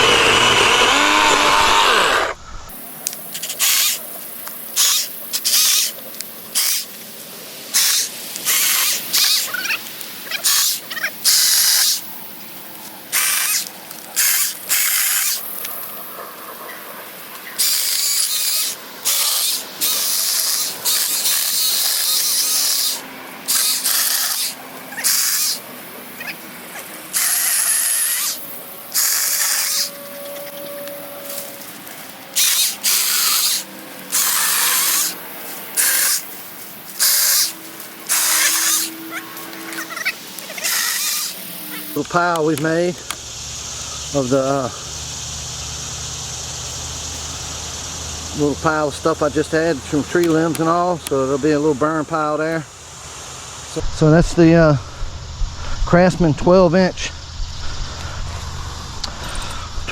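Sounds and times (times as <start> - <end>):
chainsaw cutting limbs: 0.0 - 2.4, 13.1 - 16.0, 17.4 - 30.1, 31.2 - 43.3.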